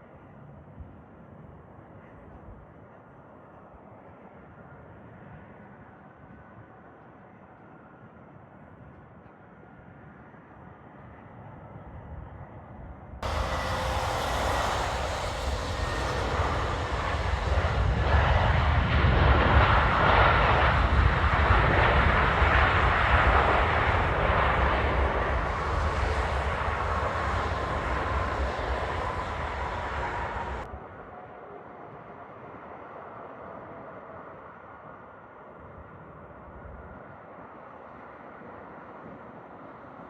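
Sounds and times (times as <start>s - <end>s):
faint falling engine whine: 13.2s - 30.7s
jet engines rushing past: 13.2s - 30.7s.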